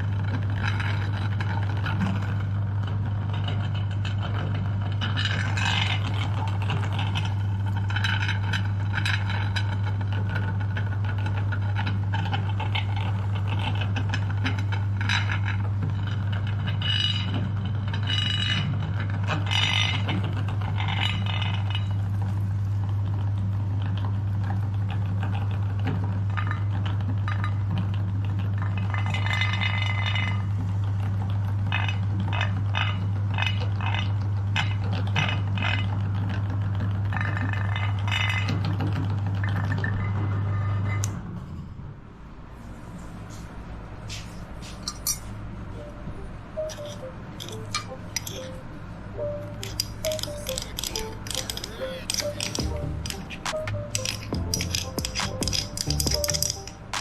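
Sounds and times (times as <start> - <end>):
grinder scraping and rattling: 0.0 - 22.4, 28.6 - 30.6, 31.6 - 41.6, 46.6 - 48.6, 49.6 - 57.0.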